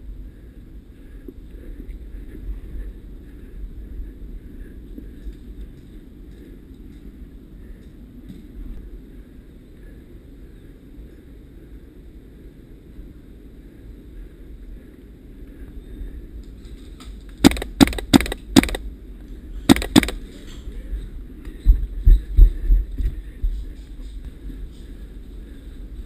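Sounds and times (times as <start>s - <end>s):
wind rumble: 0.0s - 26.0s
airsoft gun shots: 17.4s - 18.8s, 19.7s - 20.2s.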